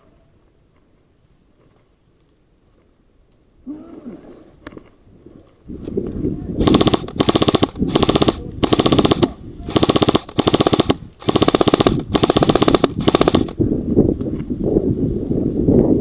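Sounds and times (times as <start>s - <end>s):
airsoft gun automatic bursts: 6.6s - 13.6s.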